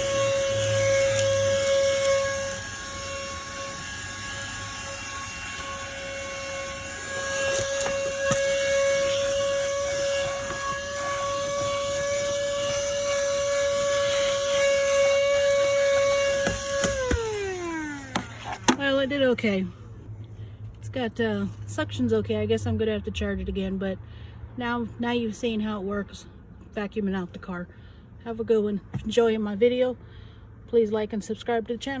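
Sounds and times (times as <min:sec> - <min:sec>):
handheld vacuum motor whine: 0:00.0 - 0:18.9.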